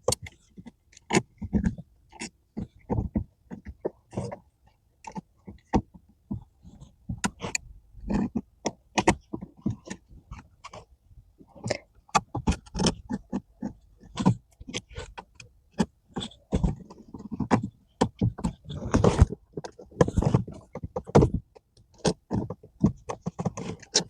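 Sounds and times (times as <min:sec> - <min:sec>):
brake pedal cover scraping: 0:05.1 - 0:10.9, 0:11.7 - 0:24.0.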